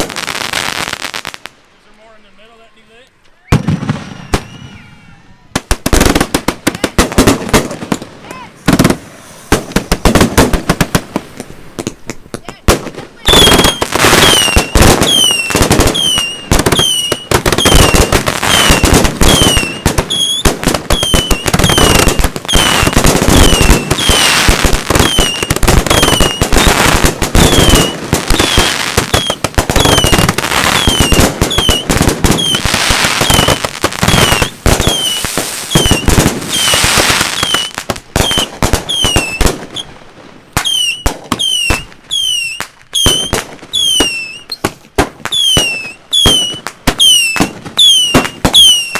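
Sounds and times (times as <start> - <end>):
fireworks bangs and crackle: 0.0 - 1.7, 2.6 - 48.9
falling firework whistle: 3.3 - 5.7, 13.2 - 39.9, 40.6 - 44.7, 45.3 - 48.9.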